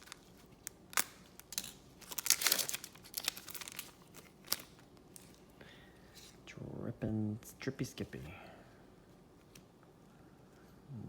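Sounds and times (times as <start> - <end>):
wrapper tearing and crinkling: 0.0 - 5.4.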